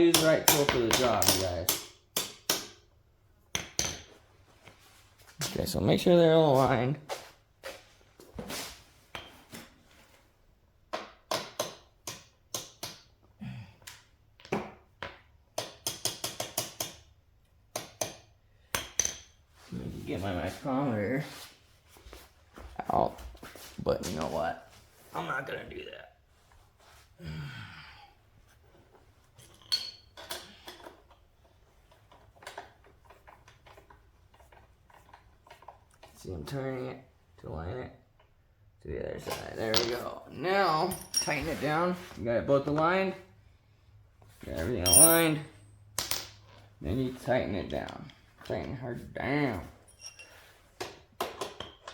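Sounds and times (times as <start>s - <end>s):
hand tools clinking on metal: 0.1s - 1.9s, 29.4s - 31.2s, 39.6s - 41.8s, 44.8s - 45.7s, 49.8s - 50.5s
sharp metallic clank: 44.9s - 45.6s.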